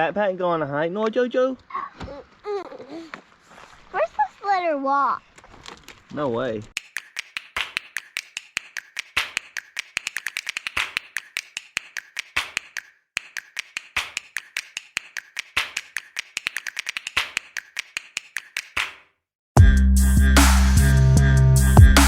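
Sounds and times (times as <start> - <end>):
rhythmic tapping clicks: 6.8 - 18.9.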